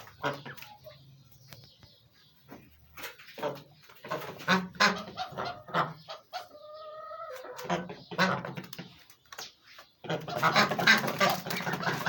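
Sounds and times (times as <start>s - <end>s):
ducks quacking: 0.0s - 1.0s, 2.5s - 9.0s, 10.0s - 12.0s.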